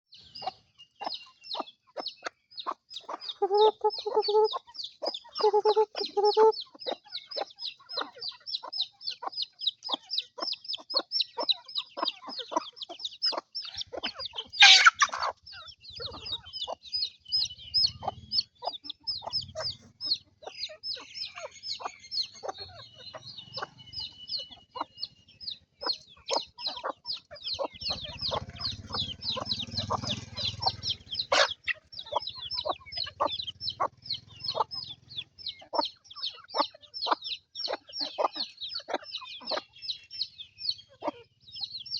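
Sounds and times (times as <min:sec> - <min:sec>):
chickens calling: 0:00.0 - 0:41.9
harsh chicken call: 0:03.1 - 0:07.0, 0:11.6 - 0:15.4, 0:25.8 - 0:34.9.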